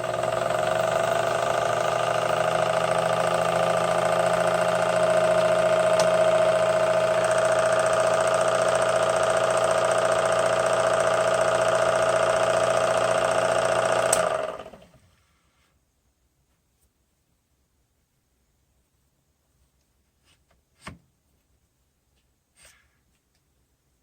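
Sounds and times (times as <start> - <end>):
lathe motor whine: 0.0 - 15.0.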